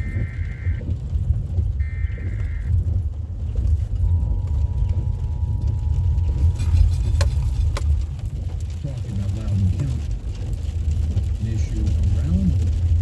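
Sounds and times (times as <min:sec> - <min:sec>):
two-tone attention signal: 0:00.0 - 0:00.8, 0:01.8 - 0:02.7, 0:04.0 - 0:06.9
low rumble: 0:00.0 - 0:13.0
warbling digital alert bursts: 0:01.8 - 0:02.7.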